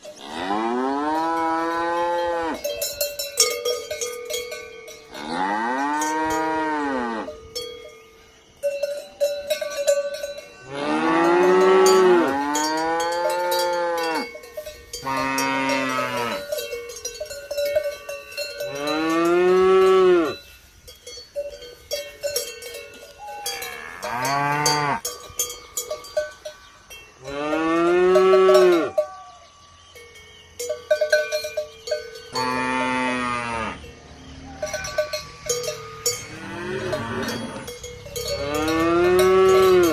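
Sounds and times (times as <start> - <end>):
cowbells clanking: 0.0 - 39.9
cattle mooing: 0.2 - 2.6, 5.1 - 7.3, 10.6 - 14.3, 15.0 - 16.4, 32.4 - 33.8, 36.0 - 39.9.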